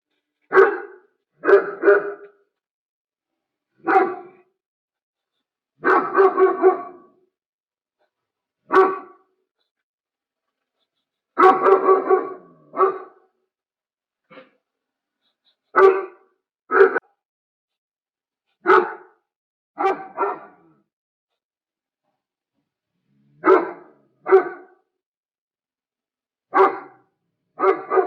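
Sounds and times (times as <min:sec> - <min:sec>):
dog barking: 0:00.5 - 0:02.5, 0:03.8 - 0:04.5, 0:05.8 - 0:07.2, 0:08.7 - 0:09.3, 0:11.4 - 0:13.4, 0:15.7 - 0:17.2, 0:18.6 - 0:20.9, 0:23.4 - 0:24.9, 0:26.5 - 0:28.0.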